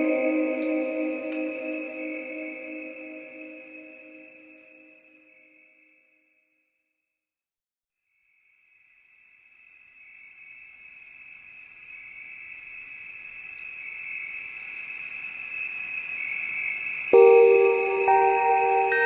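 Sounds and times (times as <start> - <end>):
music with bell-like notes: 0.0 - 3.8, 17.2 - 19.0.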